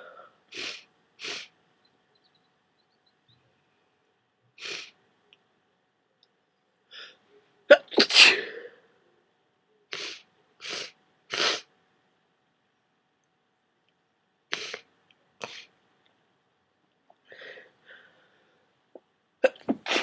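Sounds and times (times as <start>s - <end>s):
person sneezing: 7.7s - 8.7s, 19.4s - 20.0s
short breaths: 17.2s - 18.7s.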